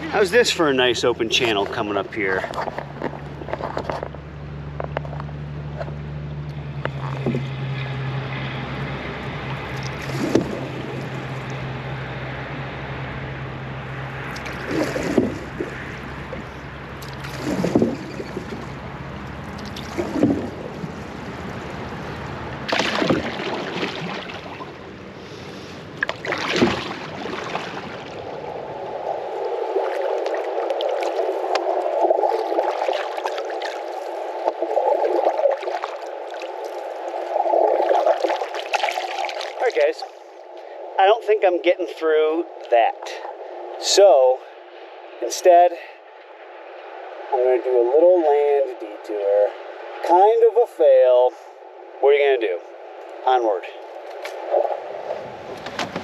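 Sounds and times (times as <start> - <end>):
paddle strokes in water: 9.2 - 11.8, 14.1 - 39.8
gurgling rush of water: 9.5 - 11.8, 14.0 - 40.2.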